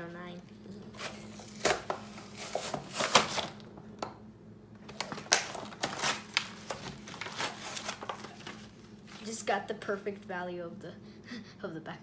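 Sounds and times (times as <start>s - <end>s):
toy packaging clicks and rustles: 4.9s - 9.3s.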